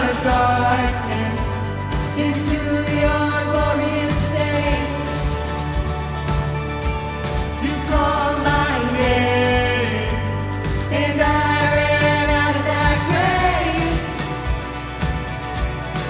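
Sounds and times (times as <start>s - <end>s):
singers holding long notes: 0.0s - 5.5s, 7.6s - 14.8s.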